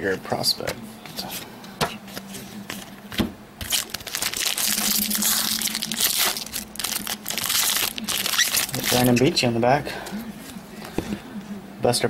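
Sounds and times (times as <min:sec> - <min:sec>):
foil wrapper crinkling: 0:03.6 - 0:09.4.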